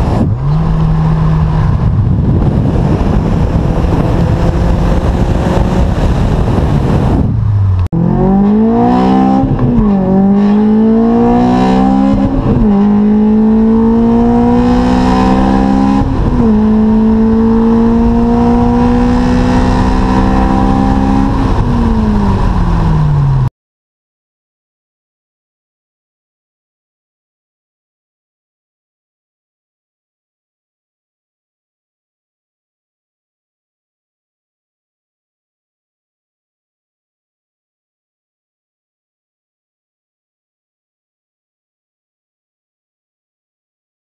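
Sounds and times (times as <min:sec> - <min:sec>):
car engine accelerating through gears: 0:00.0 - 0:23.5.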